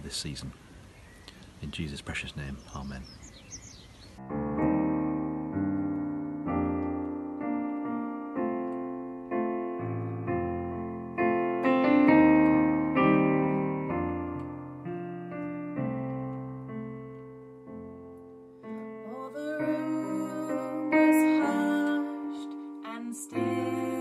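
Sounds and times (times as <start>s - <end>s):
piano playing slow chords: 3.5s - 24.0s.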